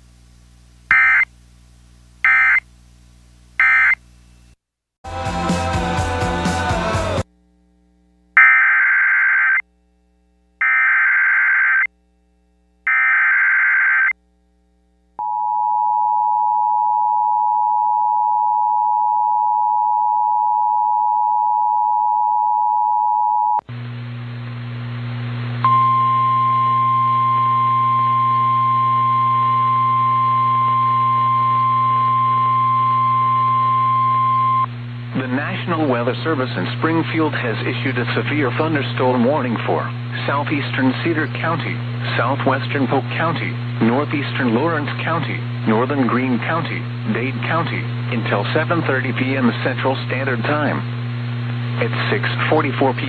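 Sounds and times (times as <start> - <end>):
radio static with low hum: 0.0 - 4.6, 23.6 - 53.0
single-tone warning alarm: 0.9 - 1.2, 2.3 - 2.6, 3.6 - 4.0, 8.4 - 9.6, 10.6 - 11.9, 12.9 - 14.1.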